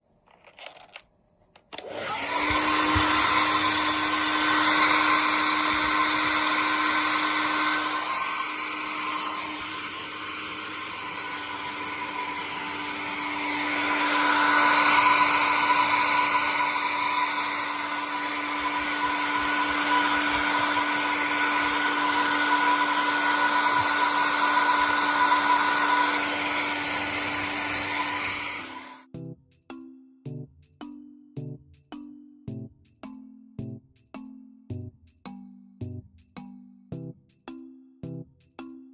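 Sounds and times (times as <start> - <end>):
hair dryer running: 1.7 - 29.1.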